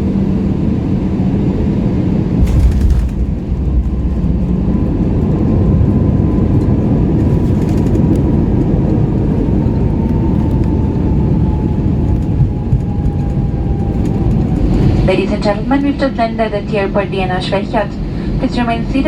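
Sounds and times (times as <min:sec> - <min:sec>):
wheels rumbling on runway: 0:00.0 - 0:18.7
faint whine dropping in pitch: 0:02.2 - 0:06.9.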